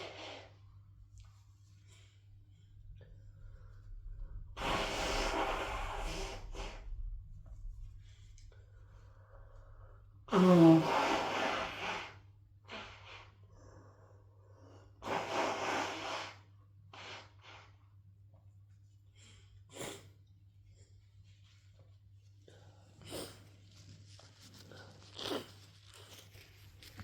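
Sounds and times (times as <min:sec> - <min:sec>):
person blowing nose: 0:04.6 - 0:06.9, 0:10.3 - 0:13.4, 0:15.0 - 0:17.8
sniffing: 0:10.3 - 0:14.0, 0:15.0 - 0:17.8, 0:19.2 - 0:20.3, 0:22.6 - 0:27.0.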